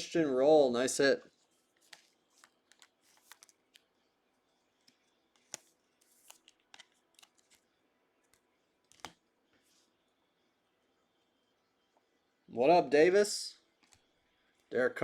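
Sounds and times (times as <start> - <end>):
trading cards being handled: 1.3 - 10.0.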